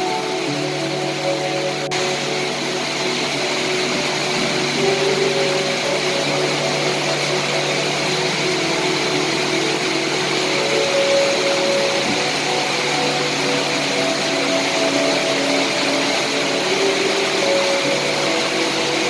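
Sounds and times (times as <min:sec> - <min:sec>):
steady rain hiss: 0:00.0 - 0:19.0.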